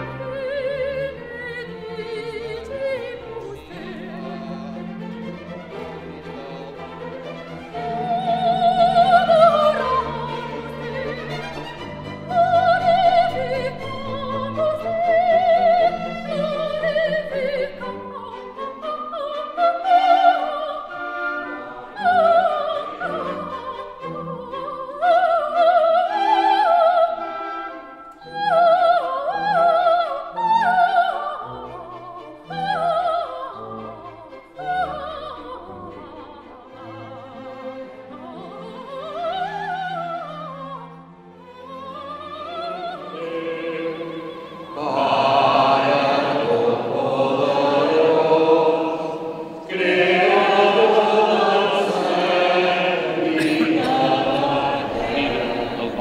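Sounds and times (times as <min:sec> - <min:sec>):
classical singing with vibrato: 0:00.0 - 0:56.0
sustained instrumental accompaniment: 0:40.8 - 0:56.0.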